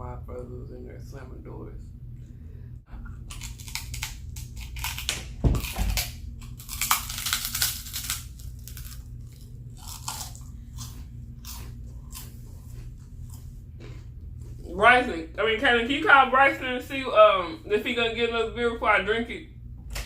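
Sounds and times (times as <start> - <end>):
crisp crunching while chewing: 3.2 - 14.5.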